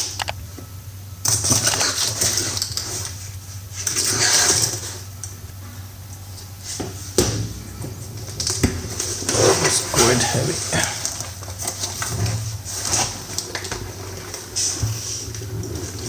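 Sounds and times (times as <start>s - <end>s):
packaging rustling and scraping: 7.7s - 16.0s.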